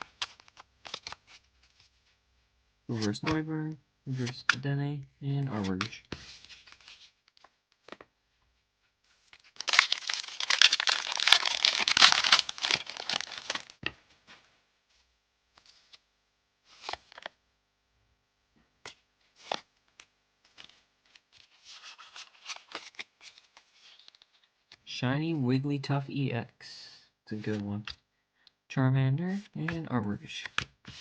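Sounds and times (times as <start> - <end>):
cards ticking and rustling: 0.0 - 1.4, 9.3 - 13.9, 16.8 - 17.3, 19.4 - 24.4, 29.3 - 31.0
foil wrapper tearing and crinkling: 9.4 - 13.8.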